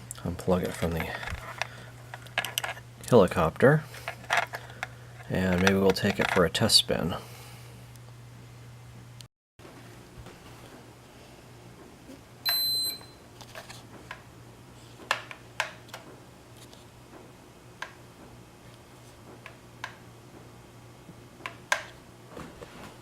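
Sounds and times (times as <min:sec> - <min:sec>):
steady low hum: 0:00.0 - 0:23.0
electronic beep: 0:12.5 - 0:13.2.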